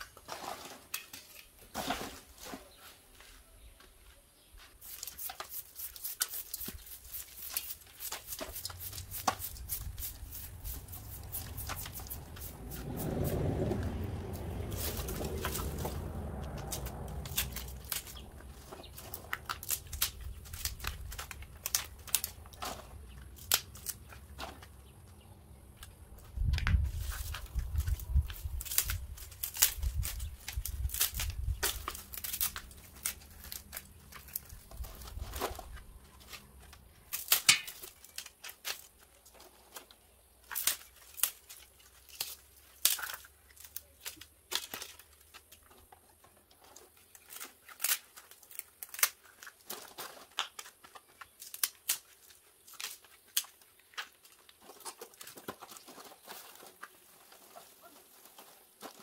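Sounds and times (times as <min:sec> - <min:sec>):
low rumble: 0:10.2 - 0:19.4
pine shoots snapping: 0:14.3 - 0:22.7, 0:23.3 - 0:24.1, 0:26.6 - 0:34.5, 0:37.1 - 0:39.0, 0:40.5 - 0:45.6, 0:47.2 - 0:49.6, 0:50.3 - 0:54.4.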